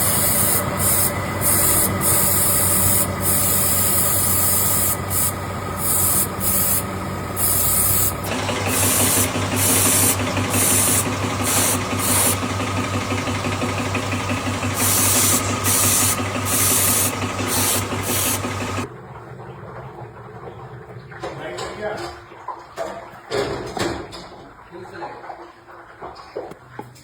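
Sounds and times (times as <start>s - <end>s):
machinery humming: 0.0s - 18.9s.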